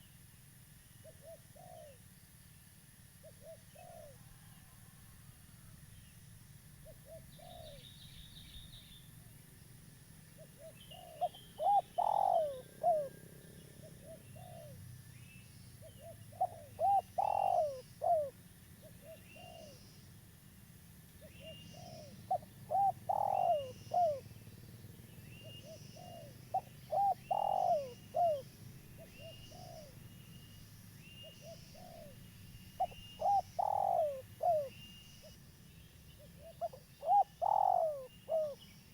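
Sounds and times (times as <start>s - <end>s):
dove cooing: 1.0s - 2.0s, 3.2s - 4.5s, 6.8s - 7.8s, 10.4s - 14.8s, 15.8s - 19.8s, 21.2s - 24.4s, 25.3s - 30.0s, 31.2s - 32.2s, 32.8s - 35.4s, 36.2s - 38.7s
small birds chirping: 10.3s - 20.2s, 21.2s - 38.9s.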